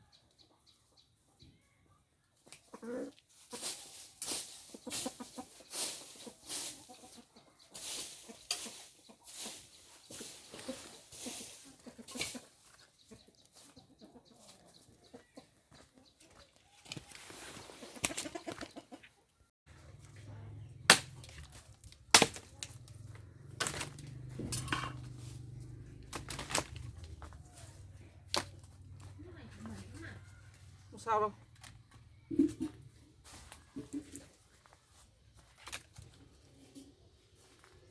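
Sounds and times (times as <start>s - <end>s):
chickens clucking: 0.0s - 21.7s, 31.5s - 34.5s
wings flapping: 17.1s - 18.8s.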